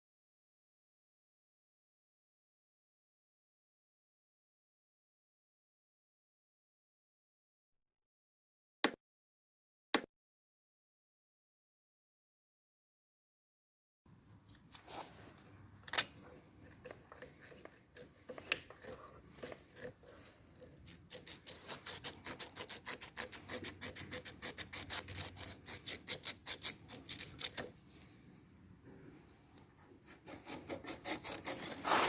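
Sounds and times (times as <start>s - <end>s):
clicks and light scrapes: 14.3s - 28.2s
quick rubbing strokes: 30.2s - 32.0s.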